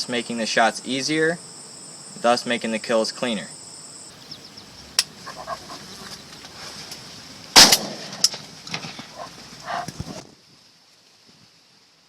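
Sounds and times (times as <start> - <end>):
insects chirring: 0.0 - 10.9
loud sharp bang: 7.6 - 8.4.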